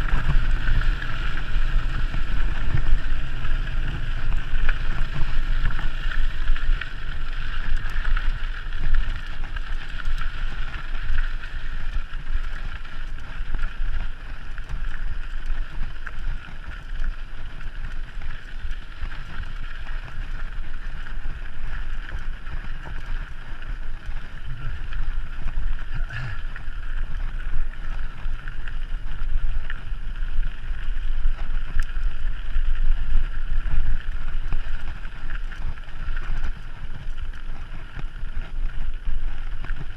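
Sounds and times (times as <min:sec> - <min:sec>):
wind buffeting microphone: 0:00.0 - 0:10.2.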